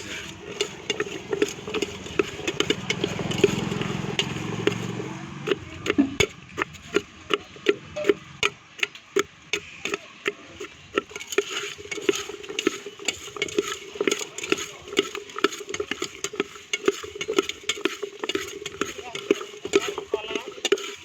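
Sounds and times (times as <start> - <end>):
vehicle engine humming past: 0.0 - 8.7
utensil knocking against a bowl: 0.0 - 21.0.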